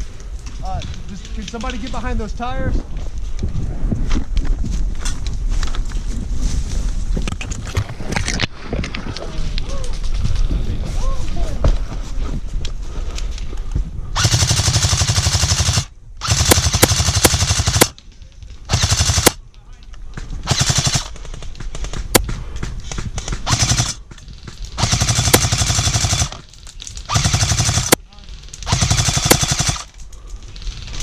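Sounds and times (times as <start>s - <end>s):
airsoft guns firing bursts: 14.2s - 18.0s, 18.7s - 19.4s, 20.4s - 22.3s, 22.9s - 26.4s, 27.1s - 29.9s.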